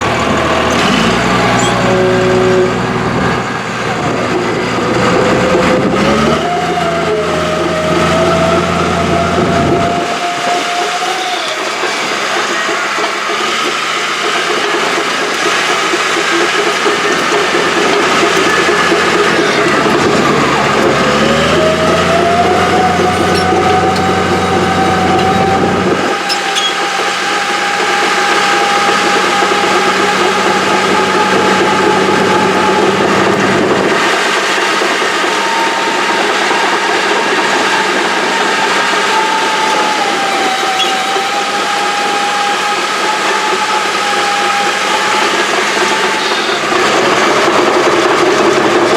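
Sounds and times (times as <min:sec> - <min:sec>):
engine whine: 0:00.0 - 0:48.9
heavy equipment engine running: 0:00.0 - 0:48.9.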